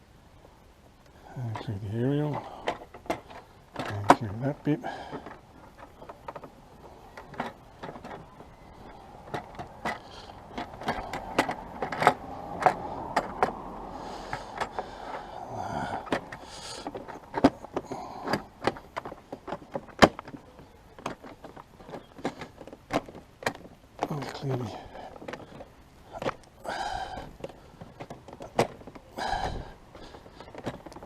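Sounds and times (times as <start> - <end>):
plastic scraping and rubbing: 1.5 - 31.0
plastic panel clicks and knocks: 7.2 - 13.7, 16.0 - 24.2.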